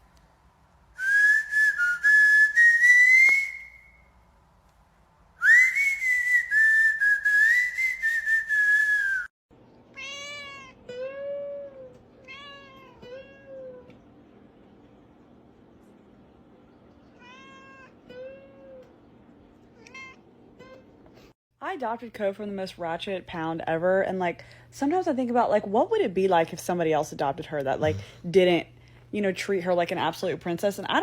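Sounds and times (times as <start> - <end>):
high whistled notes: 1.0 - 4.1
cat meowing: 9.9 - 13.9, 17.1 - 18.9, 19.8 - 20.2.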